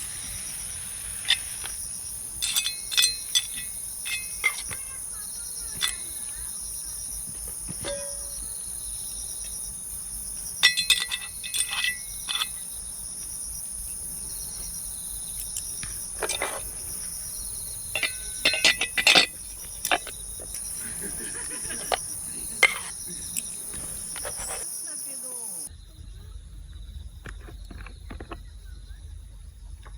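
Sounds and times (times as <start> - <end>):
insects chirping: 0.0 - 29.9
sharp clinks and clicks: 1.0 - 6.8, 7.8 - 8.6, 10.6 - 12.8, 15.2 - 24.6.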